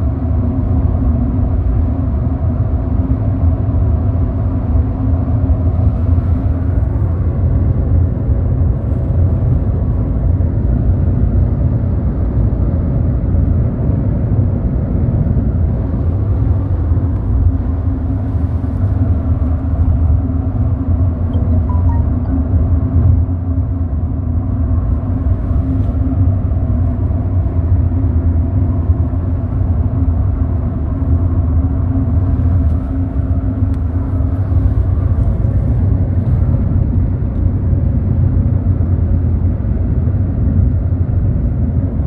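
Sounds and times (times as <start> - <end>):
car engine and road rumble: 0.0 - 42.0.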